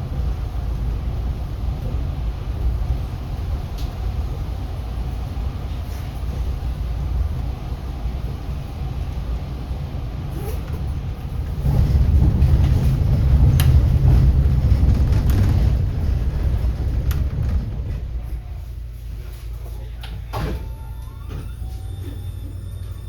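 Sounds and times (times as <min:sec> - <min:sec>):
bus engine and road rumble: 0:00.0 - 0:23.0
faint rattling clicks: 0:14.8 - 0:18.0.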